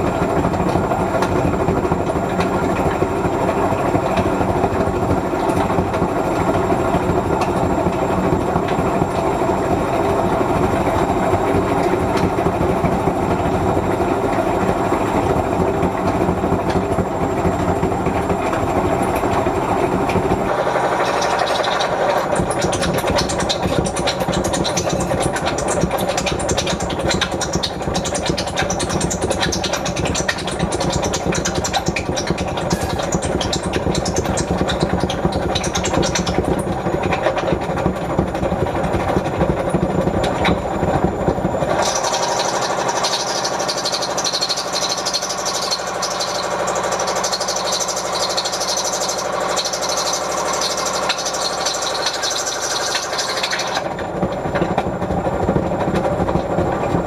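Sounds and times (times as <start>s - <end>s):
washing machine rumble: 0.0s - 57.0s.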